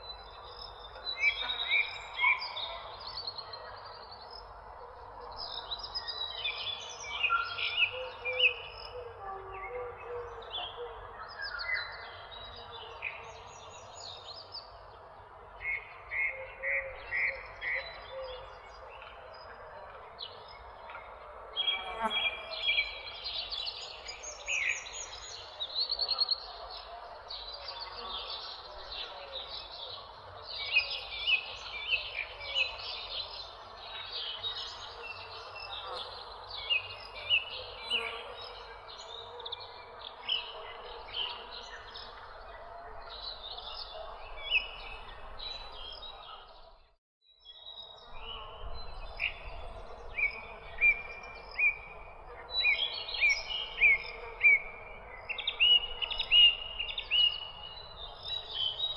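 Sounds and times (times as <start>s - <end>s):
songbirds chirping: 0.0s - 58.9s.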